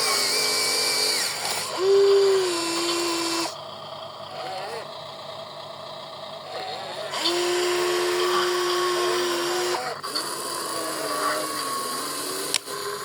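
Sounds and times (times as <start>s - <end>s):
small electric motors whining: 0.0s - 3.6s, 4.3s - 4.9s, 6.4s - 13.0s.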